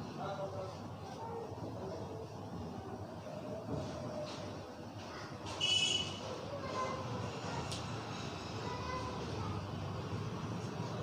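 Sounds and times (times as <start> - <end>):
street background noise: 0.0 - 11.0.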